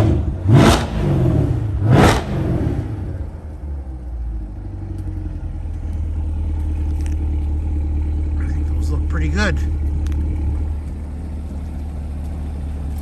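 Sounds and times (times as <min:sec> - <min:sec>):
engine revving: 0:00.0 - 0:03.9
engine idling: 0:00.0 - 0:13.0.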